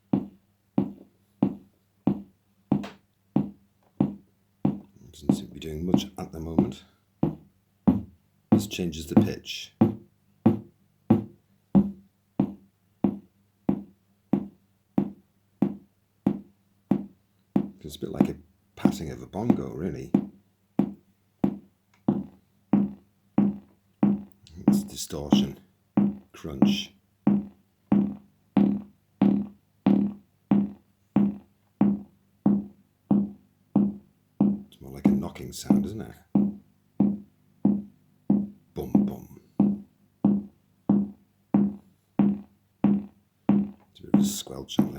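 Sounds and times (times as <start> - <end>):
electronic drum thumps: 0.2 - 44.9.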